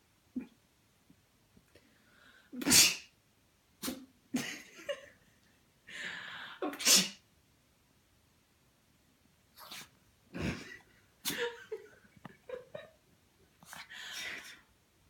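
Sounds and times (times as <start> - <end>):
dog sneezing: 2.6 - 3.1, 3.8 - 4.1, 6.7 - 7.2, 9.6 - 9.9, 11.2 - 11.5
dog snorting sneezes: 2.6 - 3.1, 3.8 - 4.1, 6.7 - 7.2, 9.6 - 10.6.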